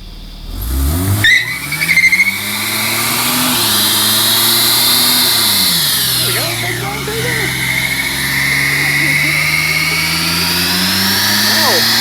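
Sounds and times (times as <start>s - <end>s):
car engine revving hard: 0.0s - 12.0s
tyres squealing: 1.2s - 12.0s.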